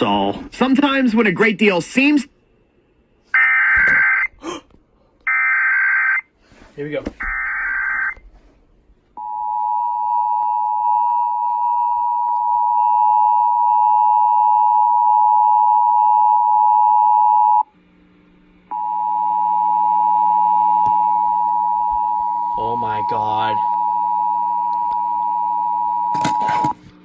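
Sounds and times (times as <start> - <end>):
two-tone alarm signal: 9.2 - 17.6, 18.7 - 26.7.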